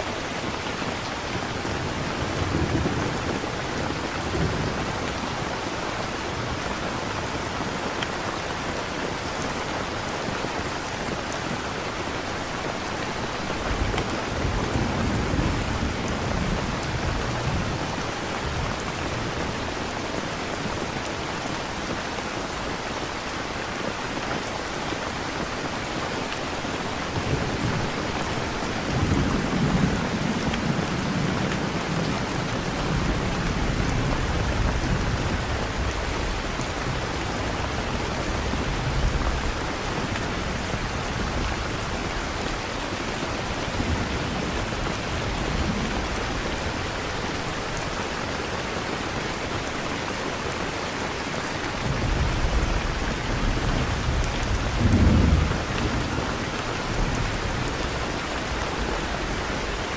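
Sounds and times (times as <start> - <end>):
rain hiss: 0.0 - 59.9.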